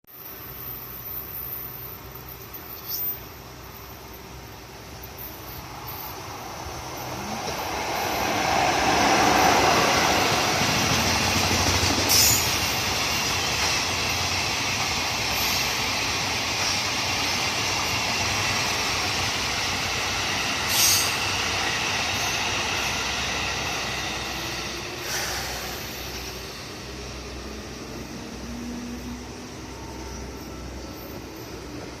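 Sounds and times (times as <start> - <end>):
freight train rumbling past: 0.2 - 32.0
sharp wheel and rail sounds: 19.9 - 26.9.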